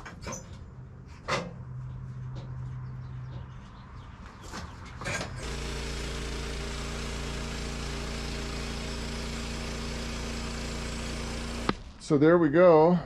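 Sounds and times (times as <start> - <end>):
sawmill engine running: 5.0 - 12.2.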